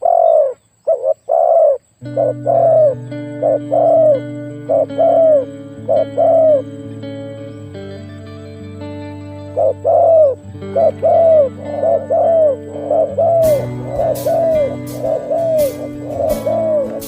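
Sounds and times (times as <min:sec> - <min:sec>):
dove cooing: 0:00.0 - 0:06.9, 0:09.5 - 0:17.0
background music: 0:02.0 - 0:17.0.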